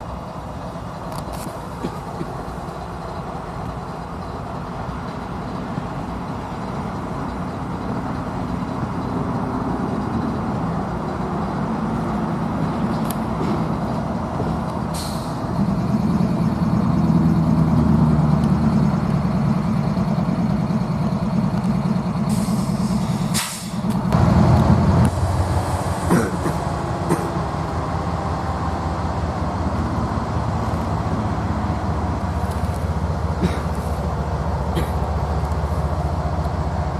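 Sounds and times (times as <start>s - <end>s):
diesel locomotives idling: 0.0s - 36.9s
train locomotive passing: 0.0s - 36.9s
air hisses: 14.9s - 15.4s, 22.3s - 23.9s.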